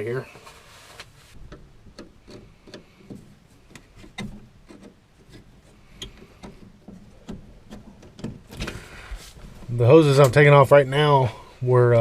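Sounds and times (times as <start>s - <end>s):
tools clicking and knocking: 1.5s - 8.6s.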